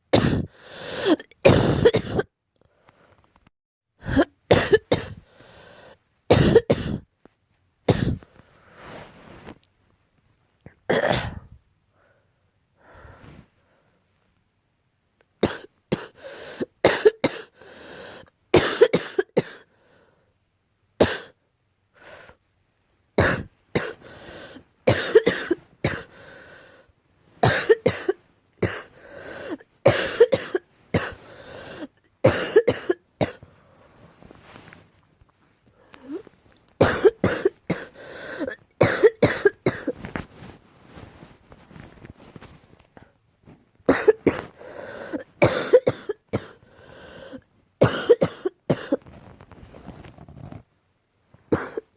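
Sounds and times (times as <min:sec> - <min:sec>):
harsh barking coughs: 0:01.4 - 0:02.3, 0:04.1 - 0:05.2, 0:06.3 - 0:07.0, 0:10.9 - 0:11.4, 0:16.9 - 0:17.5, 0:18.6 - 0:19.7, 0:21.0 - 0:21.4, 0:23.2 - 0:24.0, 0:24.9 - 0:26.1, 0:27.4 - 0:29.0, 0:29.9 - 0:31.2, 0:32.2 - 0:33.4, 0:36.8 - 0:40.0, 0:43.9 - 0:44.5, 0:45.4 - 0:46.6, 0:47.8 - 0:49.0, 0:51.6 - 0:51.9.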